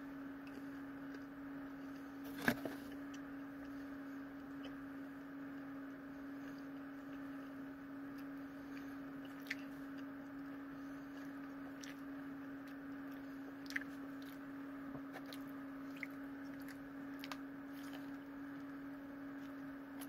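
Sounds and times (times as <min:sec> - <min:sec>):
steady low hum: 0:00.0 - 0:20.0
person chewing bread: 0:04.5 - 0:20.0.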